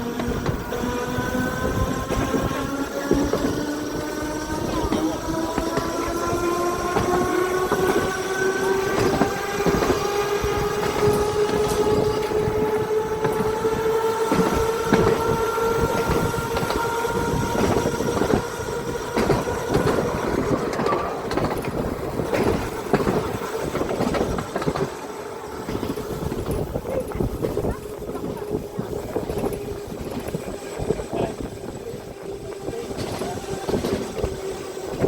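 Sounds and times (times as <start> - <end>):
tram motor whine: 0.0 - 35.0
wheels clacking over rails: 0.0 - 35.0.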